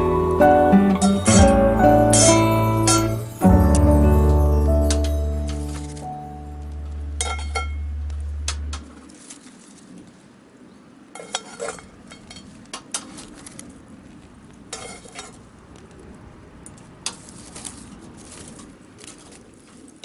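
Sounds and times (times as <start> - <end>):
metal utensil scraping a pan: 1.0 - 3.4, 11.2 - 13.2, 14.7 - 15.4.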